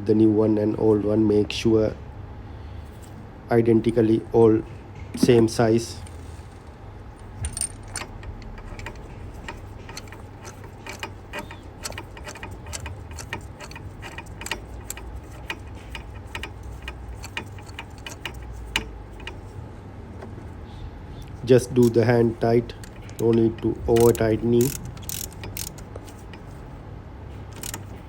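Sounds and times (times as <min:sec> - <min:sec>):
ratchet and socket clicking: 0:07.2 - 0:19.6, 0:21.6 - 0:22.1, 0:22.7 - 0:26.6, 0:27.5 - 0:28.0.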